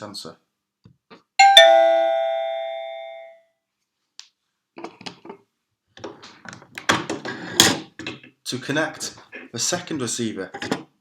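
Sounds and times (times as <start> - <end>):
doorbell chime: 1.4 - 3.4.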